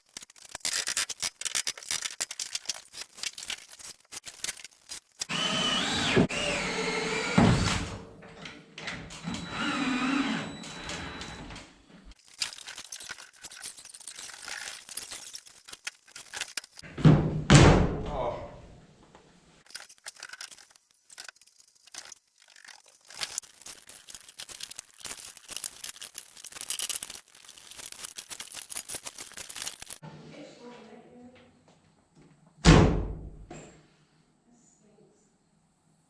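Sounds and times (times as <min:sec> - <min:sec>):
power drill driving screws: 0:05.2 - 0:08.0, 0:09.2 - 0:11.6.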